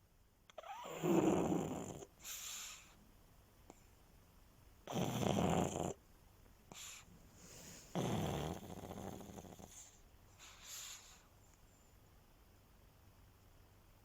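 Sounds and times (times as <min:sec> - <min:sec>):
dog snoring: 0:00.6 - 0:03.0, 0:04.8 - 0:06.0, 0:06.7 - 0:11.3
soft breathy exhales: 0:06.8 - 0:08.2.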